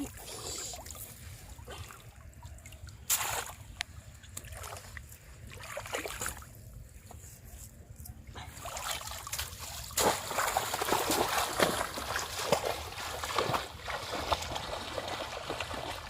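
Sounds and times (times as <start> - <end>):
shallow water splashing: 8.5 - 16.0.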